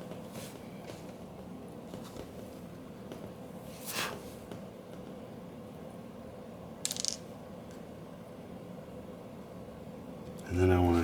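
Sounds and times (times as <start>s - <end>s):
small parts scraping: 6.8s - 7.2s.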